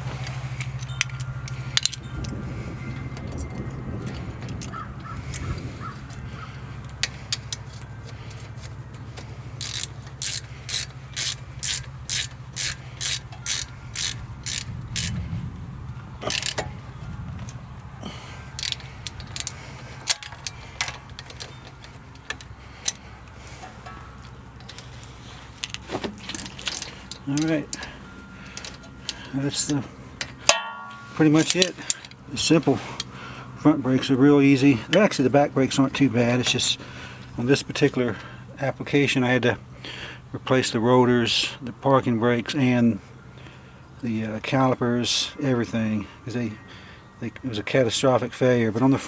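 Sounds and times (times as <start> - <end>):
steady low hum: 0.0 - 47.9
ratchet wrench clicking: 0.2 - 2.4, 9.6 - 15.2, 16.2 - 16.7, 18.5 - 23.0, 30.2 - 32.2.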